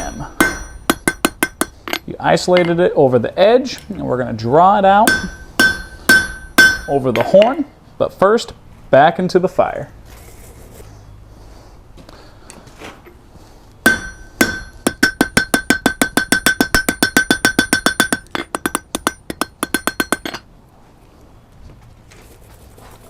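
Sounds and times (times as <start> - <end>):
hammer striking steel on anvil: 0.0 - 2.7, 5.0 - 7.6, 13.8 - 20.4.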